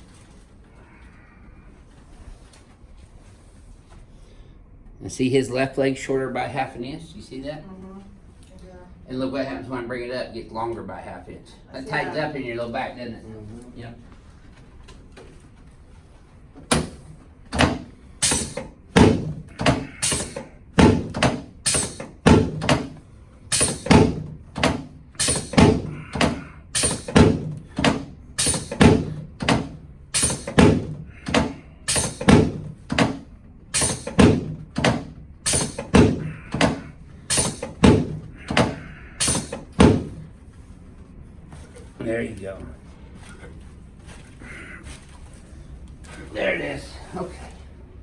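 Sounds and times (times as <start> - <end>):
hard thumps: 16.6 - 40.4.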